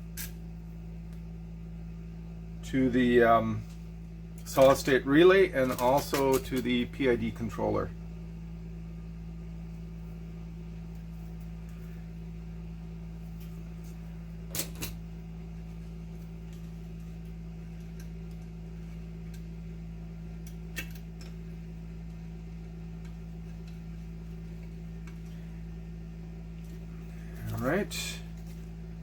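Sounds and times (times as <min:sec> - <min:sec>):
steady low hum: 0:00.0 - 0:29.0
clicks from handling wires and tools: 0:04.4 - 0:04.9, 0:05.6 - 0:06.8.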